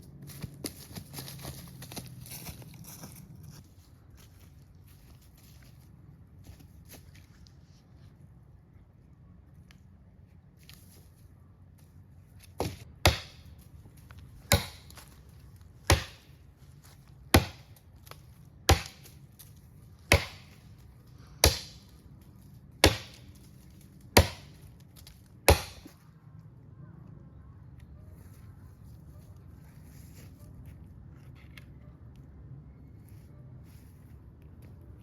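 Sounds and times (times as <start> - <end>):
wood being chopped: 12.5 - 13.6, 14.4 - 15.2, 15.8 - 16.4, 17.3 - 20.6, 21.4 - 22.0, 22.8 - 23.4, 24.0 - 26.0.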